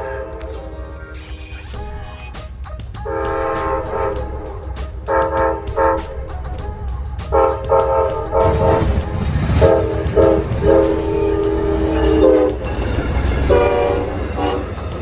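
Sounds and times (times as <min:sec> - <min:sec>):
train horn blasts: 0:03.0 - 0:06.3, 0:07.3 - 0:15.0.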